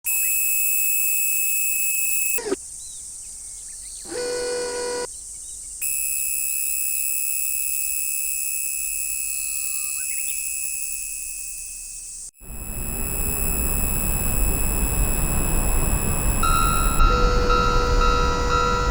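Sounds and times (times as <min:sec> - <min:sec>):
high electronic tones: 0:05.8 - 0:18.9.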